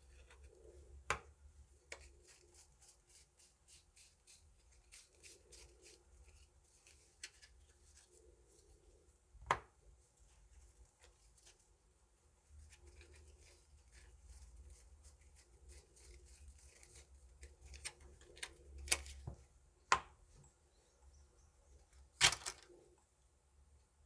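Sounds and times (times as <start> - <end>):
cards clicking and rustling: 1.9 - 8.3, 15.5 - 19.4, 22.2 - 22.8
card slaps: 22.2 - 22.6.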